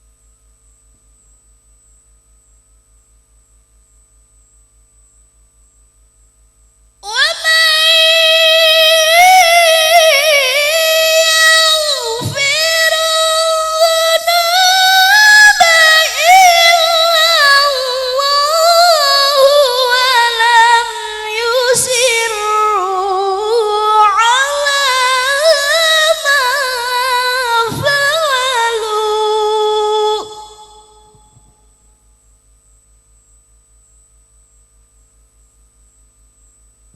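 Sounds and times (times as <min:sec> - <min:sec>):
solo voice reciting melodically: 0:07.0 - 0:31.0.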